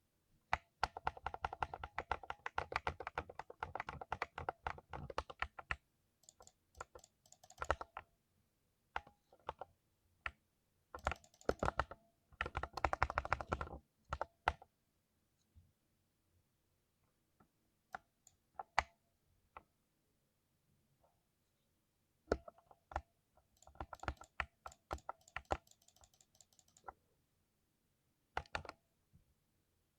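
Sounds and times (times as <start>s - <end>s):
mechanical keyboard typing: 0.5s - 8.0s, 11.0s - 14.6s, 22.3s - 27.0s, 28.4s - 28.8s.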